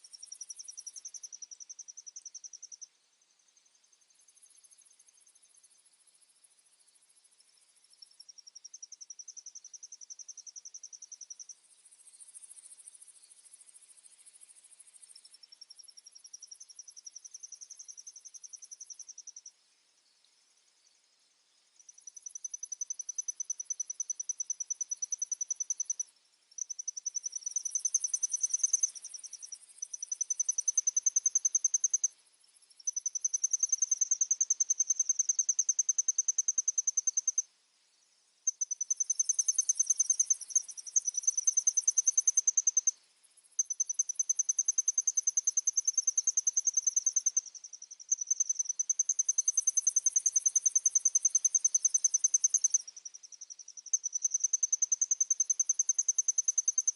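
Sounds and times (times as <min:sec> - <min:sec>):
insects trilling: 0:07.9 - 0:56.9
fainter higher insect trill: 0:21.9 - 0:37.5, 0:38.5 - 0:53.7.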